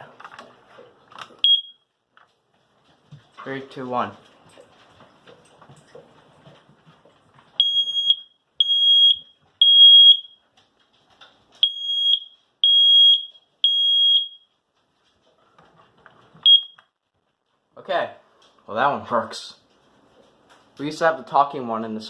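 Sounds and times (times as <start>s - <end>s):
smoke alarm beeping: 1.4s - 1.9s, 7.6s - 10.4s, 11.6s - 14.6s, 16.4s - 17.0s.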